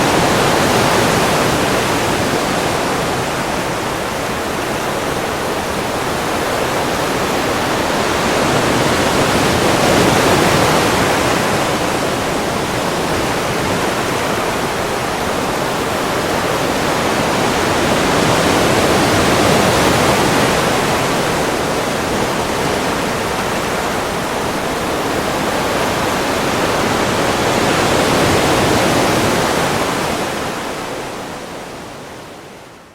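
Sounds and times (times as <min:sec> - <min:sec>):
ocean waves washing ashore: 0:00.0 - 0:32.9.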